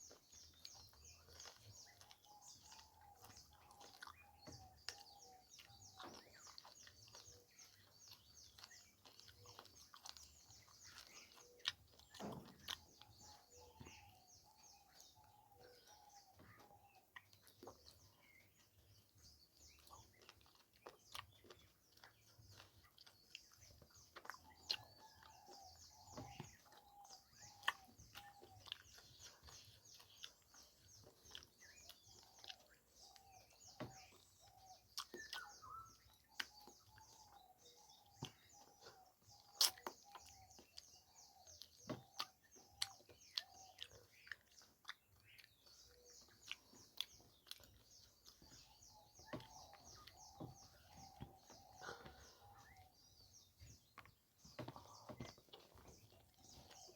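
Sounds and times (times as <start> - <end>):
chewing and utensil clicks: 0.0 - 13.7, 19.6 - 51.0.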